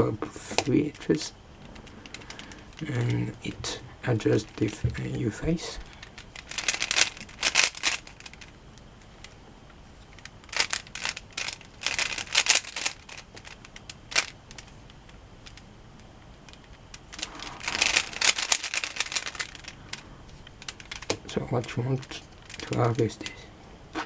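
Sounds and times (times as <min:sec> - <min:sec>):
puzzle cube turning clicks: 0:05.8 - 0:09.4, 0:10.0 - 0:24.0.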